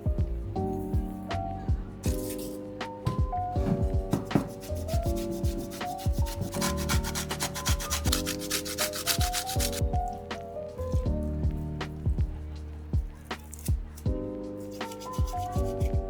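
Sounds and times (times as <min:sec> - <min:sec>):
rasping food preparation strokes: 0:02.0 - 0:02.7, 0:03.6 - 0:10.2, 0:13.1 - 0:16.0.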